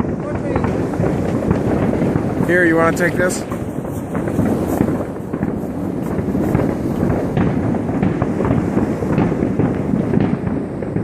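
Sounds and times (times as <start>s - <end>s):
fireworks crackling and banging: 0.0s - 11.0s.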